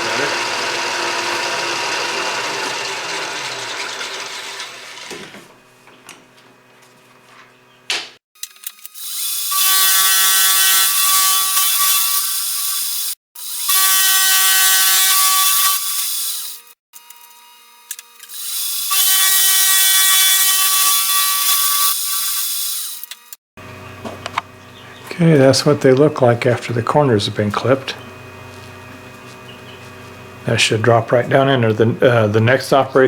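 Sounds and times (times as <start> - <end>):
machine tool cutting metal: 0.0 - 5.2, 8.4 - 23.4.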